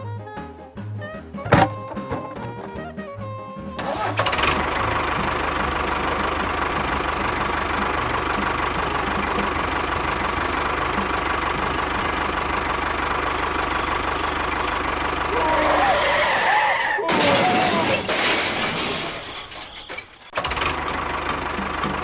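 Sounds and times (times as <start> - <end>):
small engine running: 3.8 - 16.3, 20.4 - 22.0.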